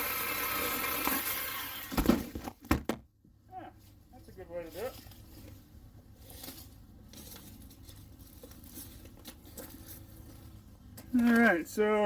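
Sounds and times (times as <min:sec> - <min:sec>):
leaves and brush rustling: 0:03.7 - 0:12.0.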